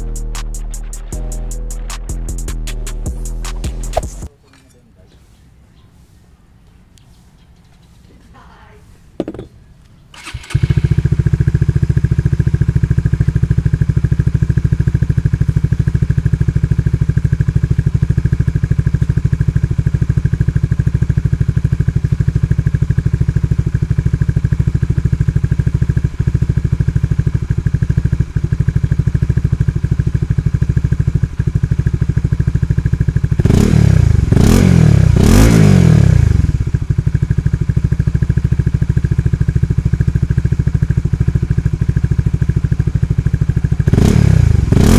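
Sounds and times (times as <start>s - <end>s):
motorcycle engine idling and revving: 0.0s - 4.3s, 10.2s - 44.9s.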